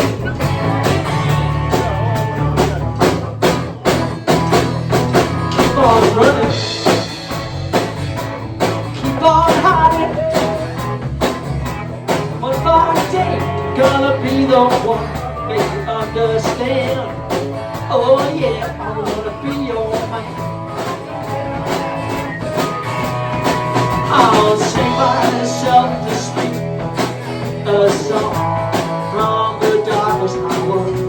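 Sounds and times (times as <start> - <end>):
bass: 0.0 - 31.0
drum kit beat: 0.0 - 31.0
guitar: 0.0 - 31.0
person singing: 5.6 - 7.0, 9.0 - 10.8, 12.4 - 20.5, 23.9 - 31.0.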